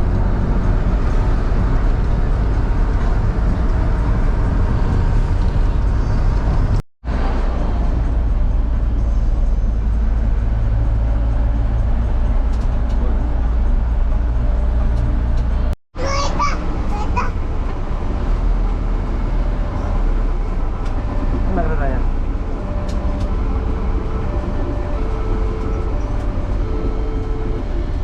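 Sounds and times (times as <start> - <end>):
bus engine rumbling: 0.0 - 28.0
road traffic noise: 0.0 - 28.0.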